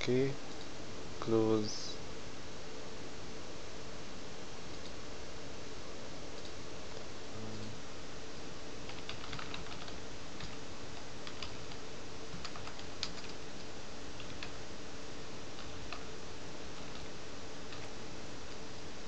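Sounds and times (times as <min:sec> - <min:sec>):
background hiss: 0:00.0 - 0:19.0
faint hum: 0:00.0 - 0:19.0
keyboard typing: 0:08.8 - 0:14.6, 0:15.5 - 0:16.1, 0:16.7 - 0:17.1, 0:17.7 - 0:18.6.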